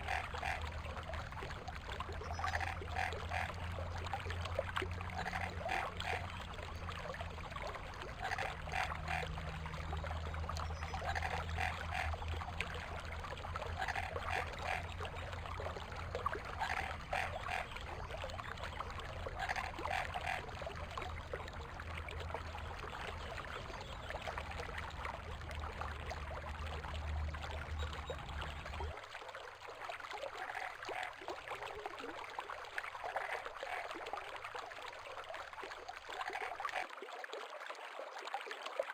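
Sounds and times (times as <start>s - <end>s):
frog croaking: 0.0s - 1.6s, 2.2s - 4.3s, 5.0s - 6.6s, 7.8s - 21.6s
creek water over stones: 0.0s - 38.9s.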